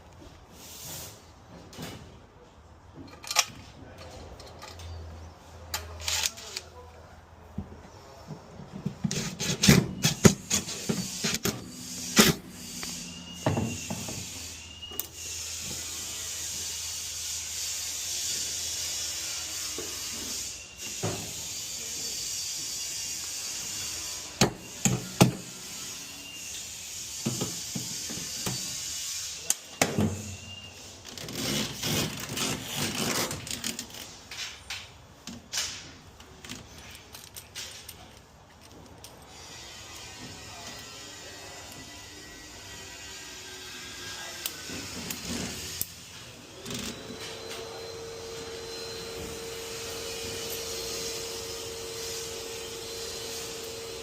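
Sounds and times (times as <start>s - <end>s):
rubbing or scraping hiss: 0.4s - 1.5s, 9.0s - 34.5s, 52.9s - 53.6s
clicks and knocks of tools: 3.0s - 6.7s, 33.3s - 40.9s.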